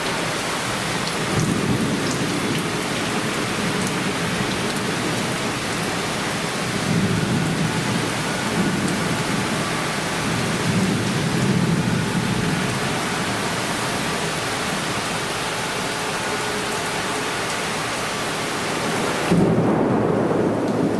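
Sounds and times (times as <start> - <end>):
heavy rain hissing: 0.0 - 20.9
rolling thunder: 1.2 - 13.4, 19.1 - 20.9.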